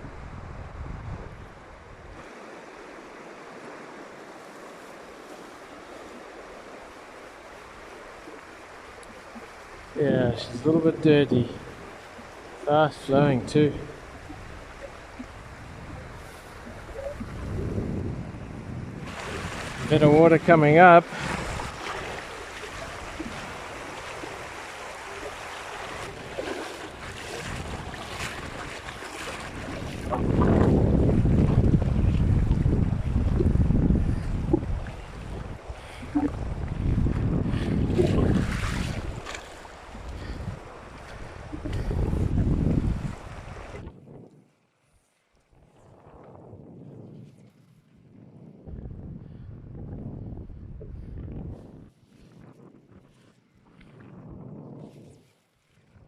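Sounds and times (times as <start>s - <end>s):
wind buffeting microphone: 0.0s - 2.2s, 8.9s - 44.5s, 45.5s - 56.0s
river water rushing: 1.6s - 17.5s, 19.1s - 30.6s.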